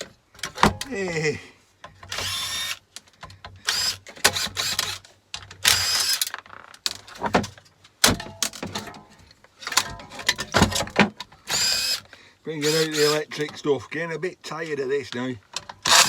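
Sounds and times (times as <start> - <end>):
cordless drill whining: 2.1 - 2.8, 3.6 - 5.0, 5.6 - 6.3, 11.5 - 13.4.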